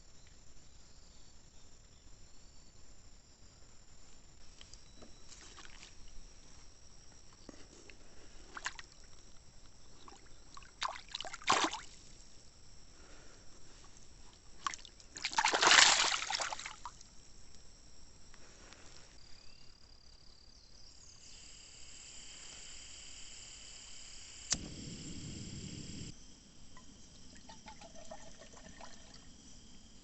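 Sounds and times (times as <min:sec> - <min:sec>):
crickets chirring: 0:00.0 - 0:30.0
water splashing and sloshing: 0:05.3 - 0:06.1, 0:10.0 - 0:12.0, 0:14.4 - 0:17.0.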